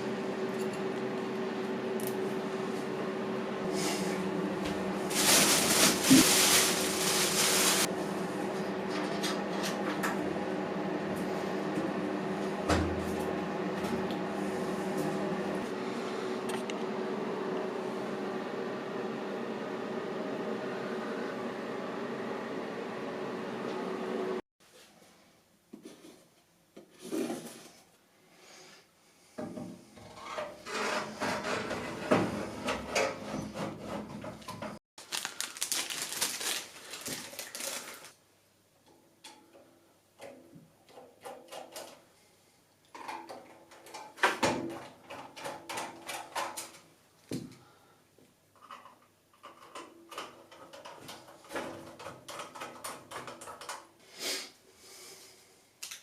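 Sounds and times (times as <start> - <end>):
packaging scraping and rustling: 5.1 - 7.9, 35.0 - 38.2.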